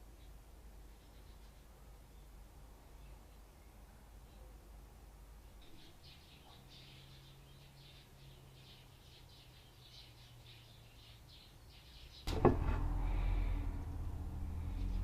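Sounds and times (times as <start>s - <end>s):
sharp knock: 12.3s - 13.0s
low hum: 12.3s - 15.0s
low rumble: 12.3s - 15.0s.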